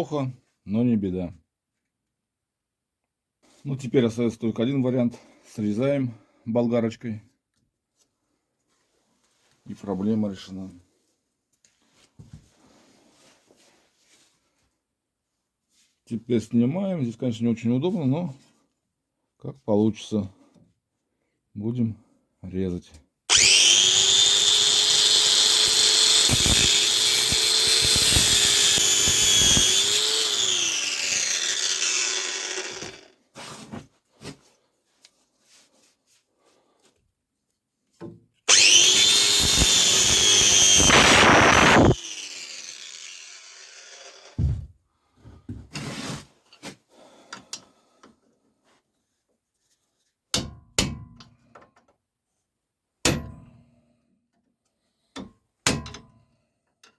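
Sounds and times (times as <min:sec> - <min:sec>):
angle grinder cutting metal: 0:23.3 - 0:33.1, 0:38.5 - 0:44.4.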